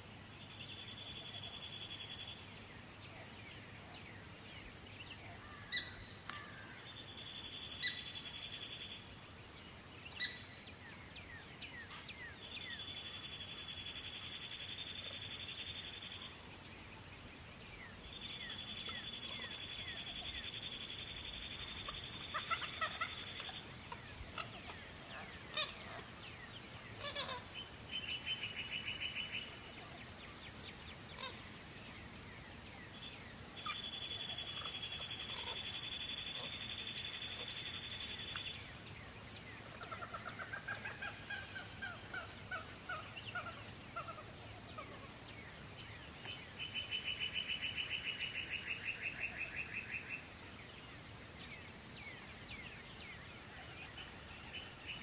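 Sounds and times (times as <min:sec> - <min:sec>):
crickets chirping: 0:00.0 - 0:55.0
low insect trill: 0:00.0 - 0:55.0.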